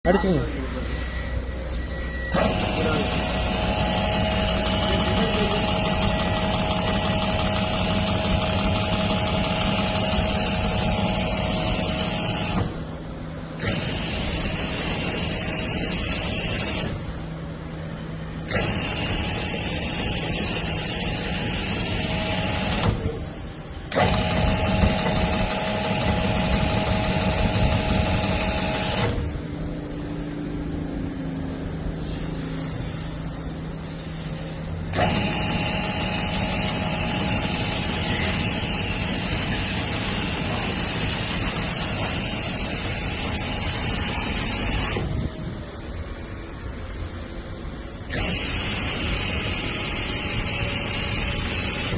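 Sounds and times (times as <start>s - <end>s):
pressure washer motor humming: 2.3s - 17.3s, 18.3s - 45.9s, 48.0s - 51.9s.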